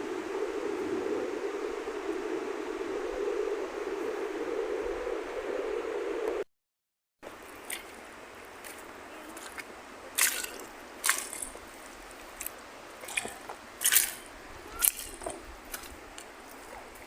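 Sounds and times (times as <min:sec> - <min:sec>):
footsteps on wet dirt: 0:07.3 - 0:17.0
steady hiss: 0:07.3 - 0:17.0.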